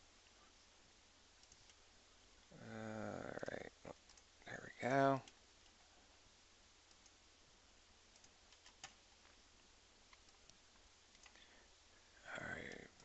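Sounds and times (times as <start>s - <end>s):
faint computer clicks: 1.4s - 1.8s, 3.3s - 4.3s, 6.8s - 7.2s, 8.1s - 9.0s, 10.1s - 11.5s.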